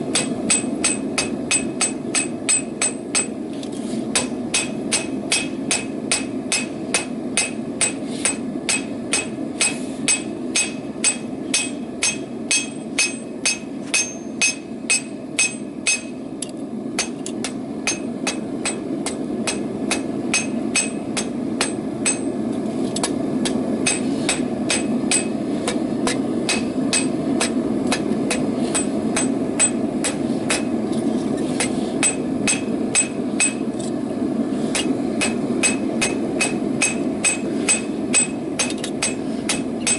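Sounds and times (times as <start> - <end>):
hammer striking metal on anvil: 0.1 - 3.4, 4.1 - 16.2, 17.0 - 22.4, 23.0 - 30.8, 31.6 - 33.7, 34.7 - 39.9.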